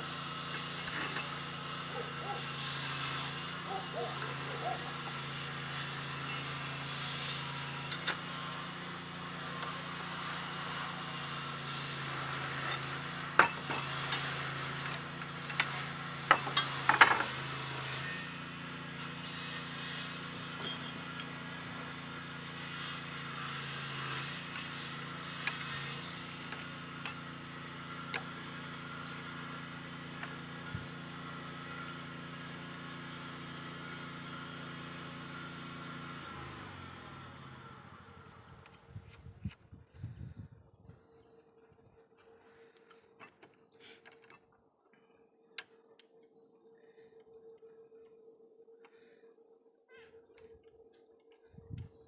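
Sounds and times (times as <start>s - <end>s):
metal clinks of steel bar: 20.6s - 21.3s
steady low hum: 37.8s - 52.0s.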